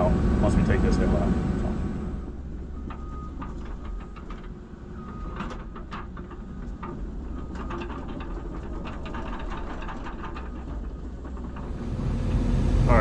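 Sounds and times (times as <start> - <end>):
diesel engine running: 0.0 - 13.0.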